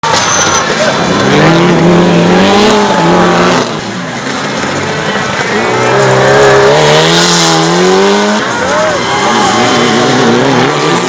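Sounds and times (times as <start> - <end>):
rally car engine under hard load: 0.0 - 11.0.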